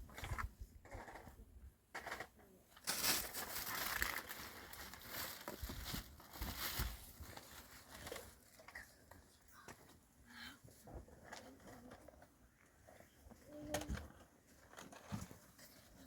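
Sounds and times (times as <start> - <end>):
dry material rustling and crinkling: 2.8 - 8.9.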